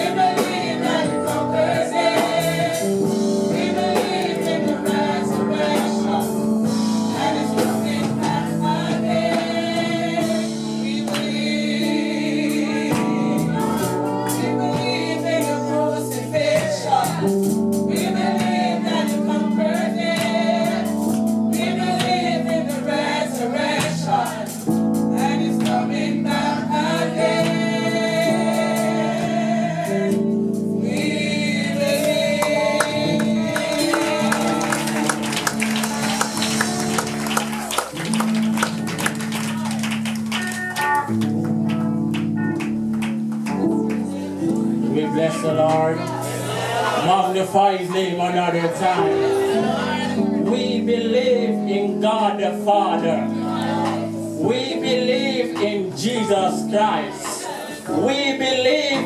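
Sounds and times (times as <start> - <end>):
steady percussive beat: 0.0 - 12.1, 30.6 - 44.2
congregation singing a hymn: 0.0 - 42.0, 43.1 - 59.0
musical accompaniment: 0.0 - 59.0.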